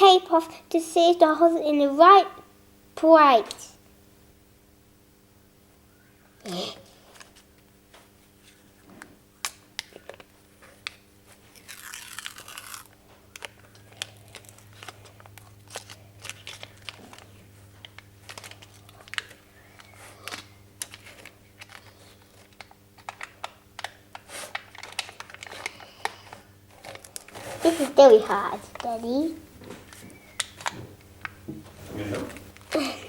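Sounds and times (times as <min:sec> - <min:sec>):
tape peeling off plastic: 0:09.4 - 0:27.8
tape ripping: 0:11.4 - 0:19.4.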